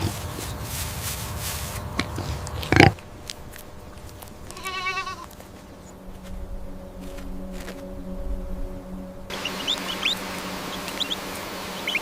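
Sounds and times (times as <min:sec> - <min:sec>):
farm animal calls: 0:00.0 - 0:00.8, 0:01.8 - 0:03.0, 0:04.4 - 0:05.4, 0:09.3 - 0:12.0.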